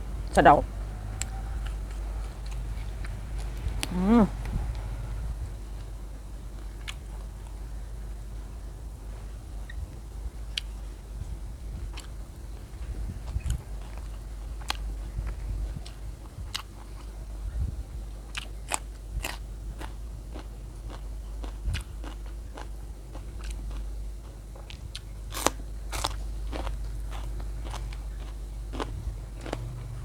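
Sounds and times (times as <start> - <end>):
person chewing crunchy food: 1.2 - 4.8, 11.9 - 12.2, 13.2 - 17.2, 18.3 - 30.0.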